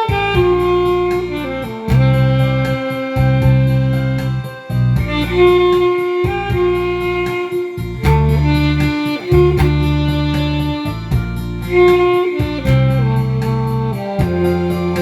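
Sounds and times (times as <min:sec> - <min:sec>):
alto saxophone melody: 0:00.0 - 0:15.0
backing track with steady beat: 0:00.0 - 0:15.0.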